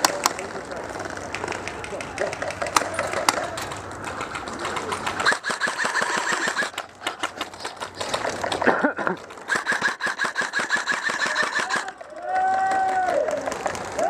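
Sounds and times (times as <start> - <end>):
airsoft gun firing full-auto: 4.4 - 8.2, 9.5 - 12.0.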